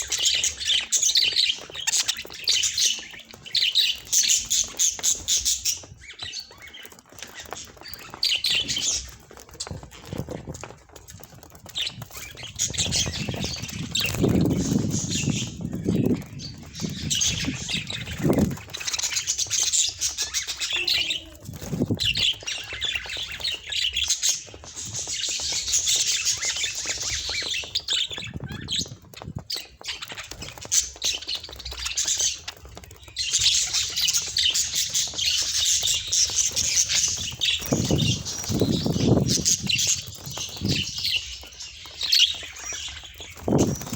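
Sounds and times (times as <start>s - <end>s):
budgerigars chirping and squawking: 0.0s - 43.9s.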